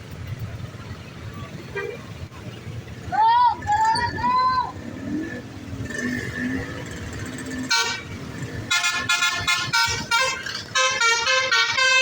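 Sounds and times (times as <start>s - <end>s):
bus multi-tone horn melody: 7.6s - 12.0s.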